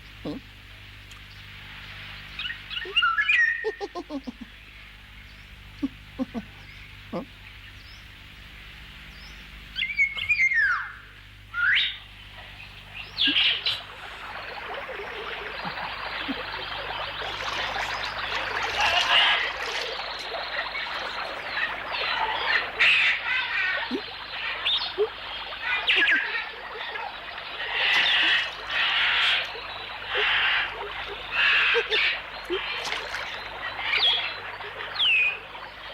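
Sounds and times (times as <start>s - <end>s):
chorus of chattering animal calls: 2.7s - 4.6s, 5.8s - 7.4s, 11.7s - 35.9s
high animal chirps and squeals: 2.8s - 4.5s.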